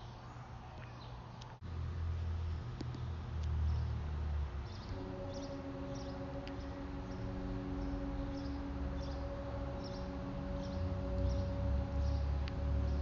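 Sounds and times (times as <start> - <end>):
low droning hum: 1.6 - 13.0
low rumble: 3.5 - 13.0.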